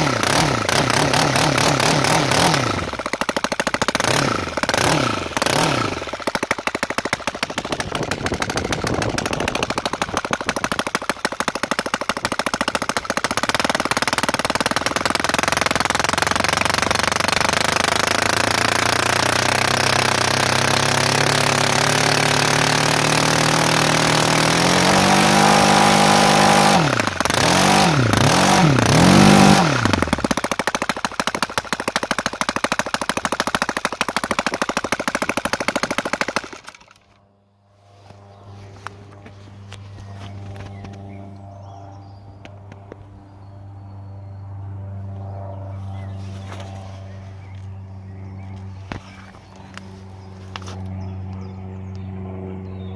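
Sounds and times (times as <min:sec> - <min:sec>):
loud engine revving: 0:00.0 - 0:31.4.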